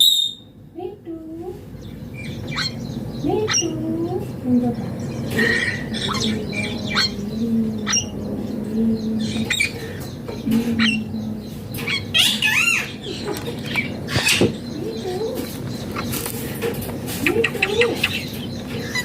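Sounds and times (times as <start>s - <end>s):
parrot squawking and chirping: 0.0s - 0.5s, 2.1s - 3.8s, 5.2s - 8.3s, 9.2s - 10.2s, 11.8s - 19.0s
steady low hum: 0.0s - 19.0s.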